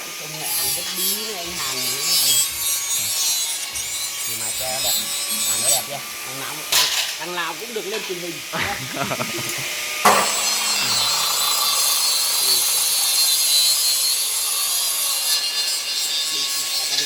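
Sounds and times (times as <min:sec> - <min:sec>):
welding arc hissing: 0:00.0 - 0:17.0
welding arc striking crack: 0:10.0 - 0:13.6.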